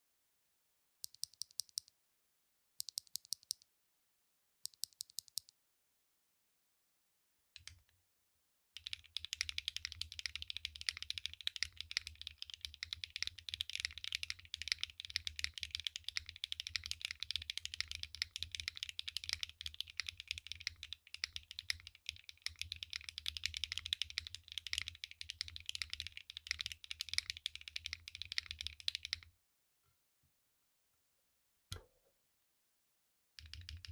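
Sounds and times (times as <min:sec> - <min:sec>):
mechanical keyboard typing: 0:01.1 - 0:01.9, 0:08.8 - 0:29.2, 0:33.4 - 0:33.9.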